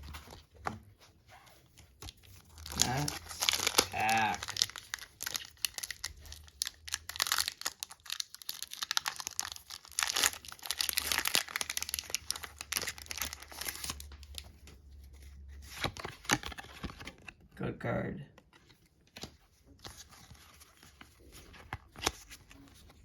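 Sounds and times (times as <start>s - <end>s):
foil wrapper tearing and crinkling: 2.0s - 14.1s.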